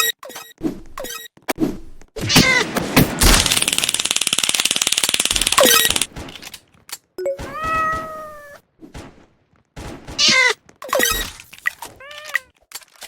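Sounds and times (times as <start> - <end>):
fast rattling: 3.4 - 6.1
cats meowing: 7.3 - 8.6, 11.8 - 12.5.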